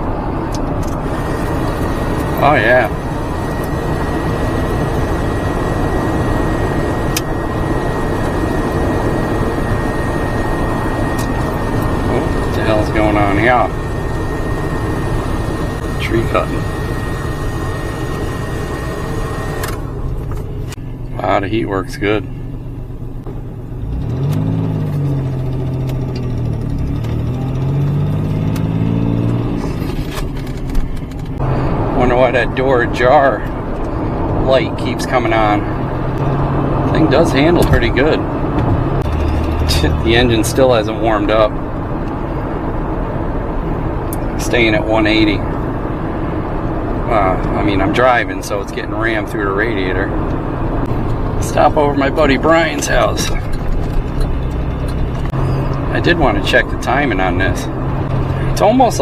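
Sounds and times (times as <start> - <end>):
heater blower fan: 0.0 - 21.4
car engine running: 0.0 - 59.0
road noise: 0.0 - 59.0.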